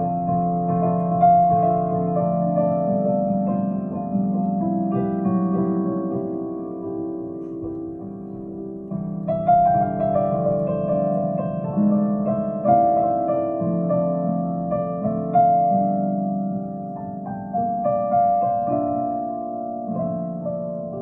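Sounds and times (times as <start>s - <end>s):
piano chords: 0.0s - 21.0s.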